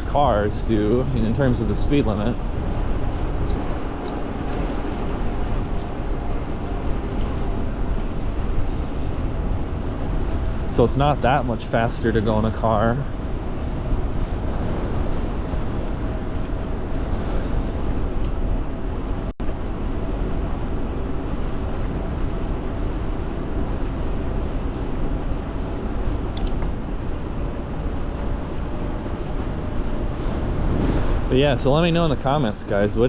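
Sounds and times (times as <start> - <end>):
faint steady whine: 0.0 - 33.0
road noise: 0.0 - 33.0
wind rushing over microphone: 0.0 - 33.0.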